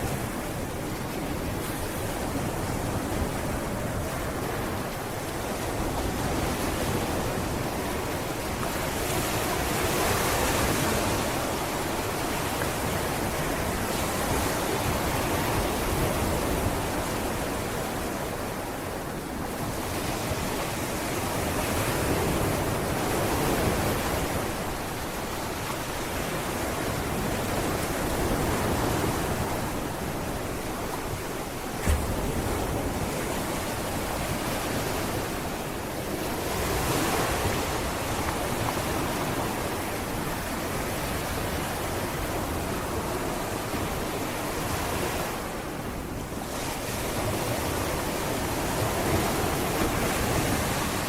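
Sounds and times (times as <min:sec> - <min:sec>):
sea waves breaking on beach: 0:00.0 - 0:51.0
wind on microphone: 0:00.0 - 0:51.0.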